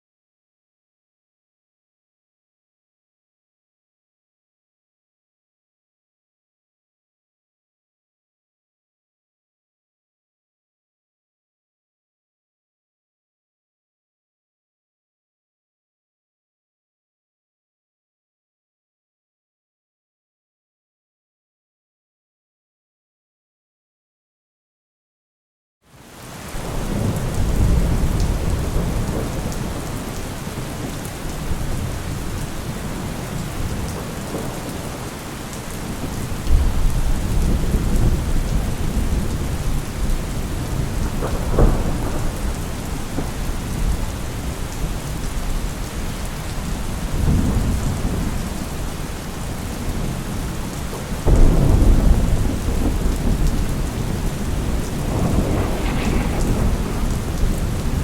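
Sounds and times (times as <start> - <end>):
heavy steady rain: 25.9 - 58.0
thunder rumbling: 26.6 - 30.2, 36.0 - 44.5, 51.3 - 58.0.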